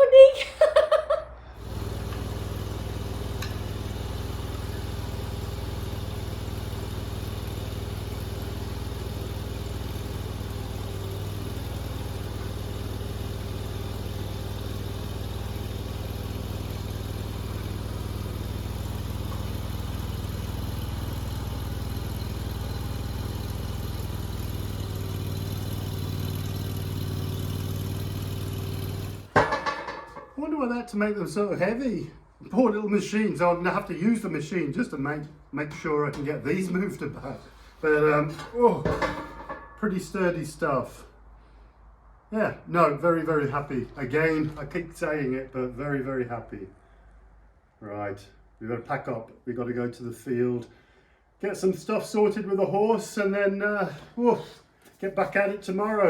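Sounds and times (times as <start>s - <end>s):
skid steer engine running: 1.4s - 30.4s.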